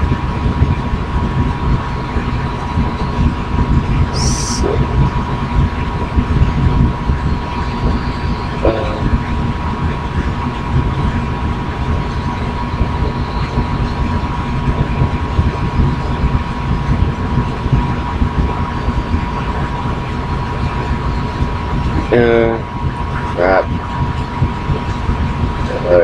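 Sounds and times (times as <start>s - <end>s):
rotor rumbling: 0.0s - 26.0s.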